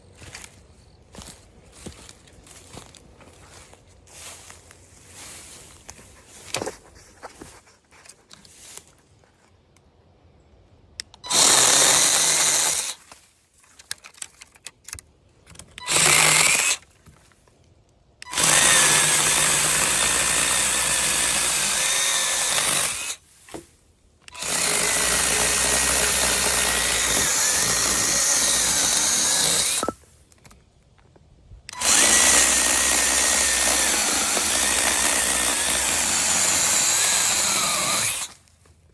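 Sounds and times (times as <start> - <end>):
electric mini chainsaw running: 11.3 - 13.0, 15.8 - 16.8, 18.3 - 23.2, 24.3 - 30.0, 31.7 - 38.4.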